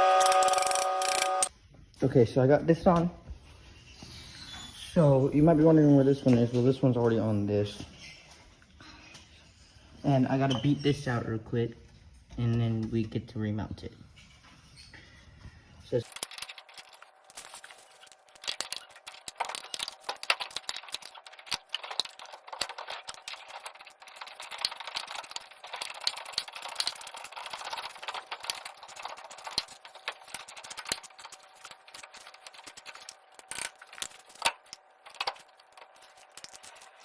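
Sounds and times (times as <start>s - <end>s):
welding arc crackling: 16.0s - 37.0s.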